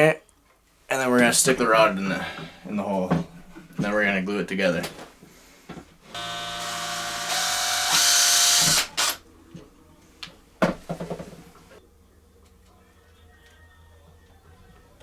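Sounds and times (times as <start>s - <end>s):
power drill boring: 6.1s - 9.2s.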